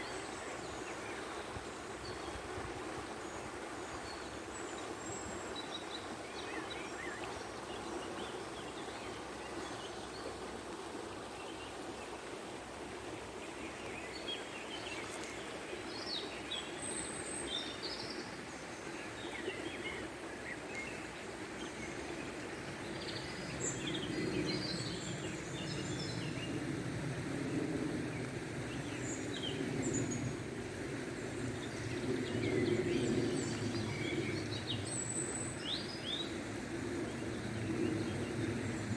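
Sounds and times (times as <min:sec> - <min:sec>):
water flowing: 0:00.0 - 0:18.8.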